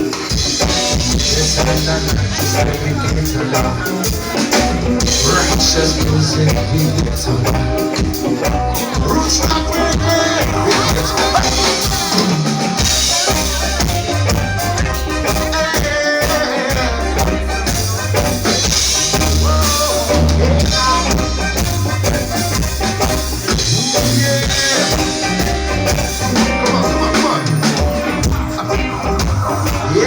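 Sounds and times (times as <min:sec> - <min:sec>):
live reggae band playing: 0:00.0 - 0:30.0.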